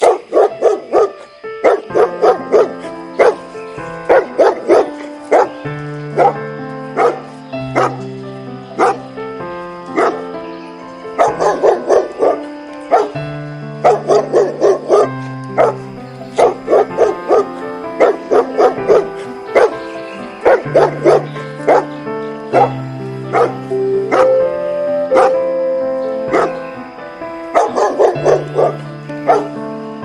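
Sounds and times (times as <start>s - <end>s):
dog barking: 0.0s - 5.6s, 6.2s - 8.0s, 8.8s - 9.1s, 9.9s - 10.3s, 11.1s - 13.2s, 13.8s - 24.4s, 25.0s - 25.5s, 26.2s - 29.6s
background music: 0.0s - 30.0s.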